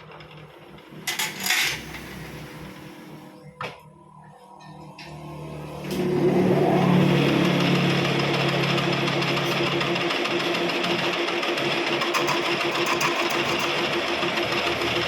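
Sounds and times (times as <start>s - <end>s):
tool scraping workpiece: 1.1s - 2.2s, 12.0s - 13.9s
lathe whirring: 5.9s - 15.0s.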